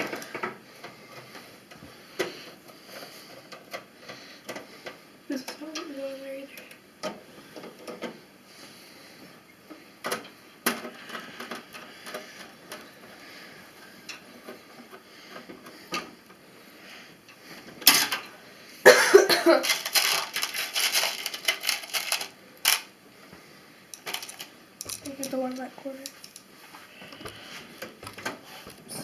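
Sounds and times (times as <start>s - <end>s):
small metal parts clattering: 17.8s - 18.3s, 19.6s - 22.9s, 23.9s - 26.5s.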